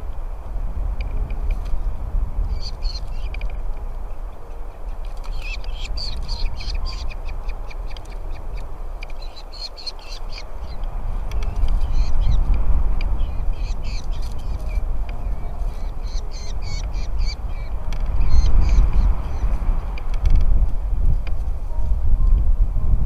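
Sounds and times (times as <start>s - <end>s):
low steady rumble: 0.0s - 23.0s
falcon chicks chirping: 2.4s - 19.6s.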